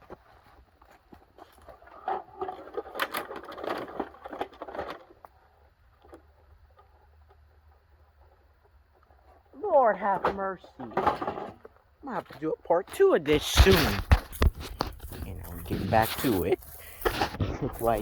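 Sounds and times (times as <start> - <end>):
plastic and metal parts rattling: 1.6 - 5.4, 13.3 - 18.0.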